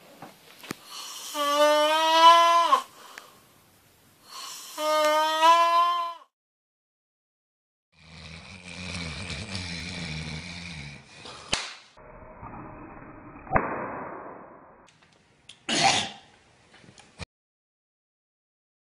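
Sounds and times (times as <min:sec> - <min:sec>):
man snoring: 0:00.9 - 0:02.0, 0:07.9 - 0:11.5
sharp impacts: 0:13.5 - 0:14.8.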